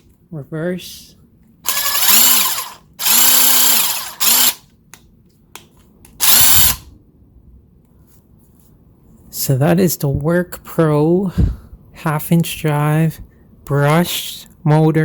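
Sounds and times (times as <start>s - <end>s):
impact wrench motor whining: 1.7s - 4.6s, 6.2s - 6.9s.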